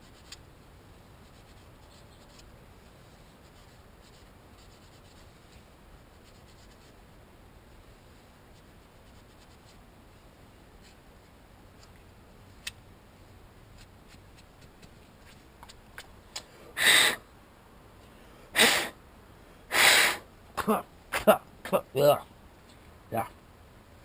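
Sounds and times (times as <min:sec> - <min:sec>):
man blowing through fuel line: 0:16.8 - 0:17.2, 0:18.5 - 0:19.0, 0:19.7 - 0:20.3.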